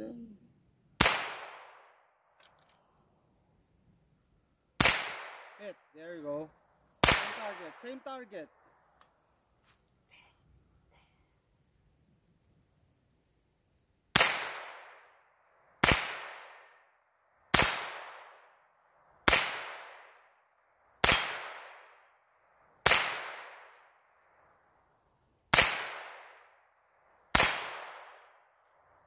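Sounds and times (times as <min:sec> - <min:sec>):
rifle shots: 0:01.0 - 0:02.0, 0:04.8 - 0:05.9, 0:07.0 - 0:08.0, 0:14.1 - 0:15.2, 0:15.8 - 0:16.8, 0:17.5 - 0:18.5, 0:19.2 - 0:20.2, 0:21.0 - 0:22.0, 0:22.8 - 0:23.9, 0:25.5 - 0:26.5, 0:27.3 - 0:28.4.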